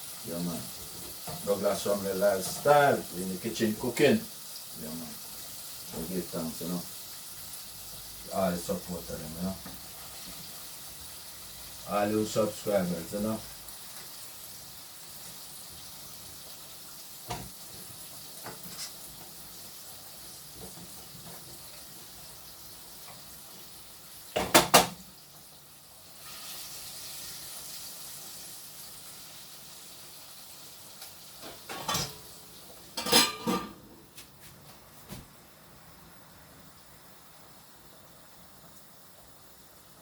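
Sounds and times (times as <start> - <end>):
chicken sizzling in hot oil: 0.0 - 33.8, 35.6 - 40.0
metal pots clattering: 31.4 - 32.3, 33.0 - 34.0.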